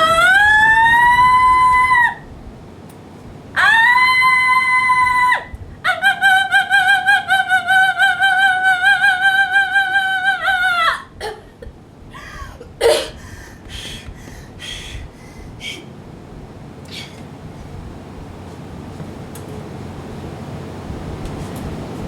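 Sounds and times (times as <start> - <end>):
woman coughing: 11.2 - 11.7, 12.5 - 13.2.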